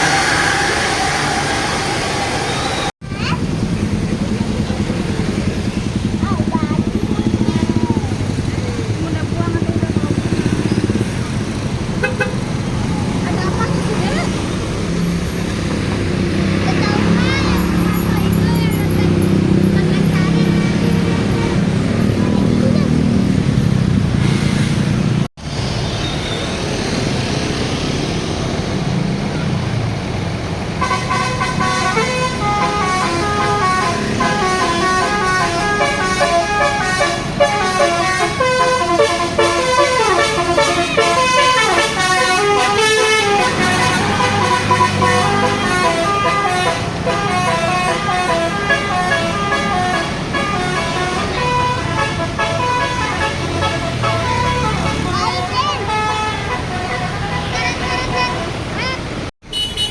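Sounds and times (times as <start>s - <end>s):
bus engine running: 0.0s - 59.3s
musical air horn tune: 30.8s - 55.2s.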